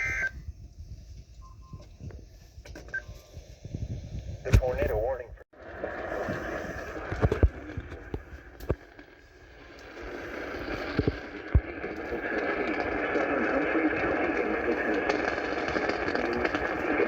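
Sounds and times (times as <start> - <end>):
static-like hiss: 8.5 - 17.0.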